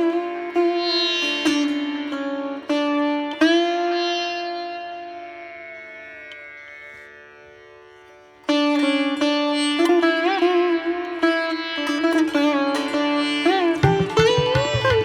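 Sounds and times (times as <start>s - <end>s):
plucked string instrument: 8.5s - 15.0s.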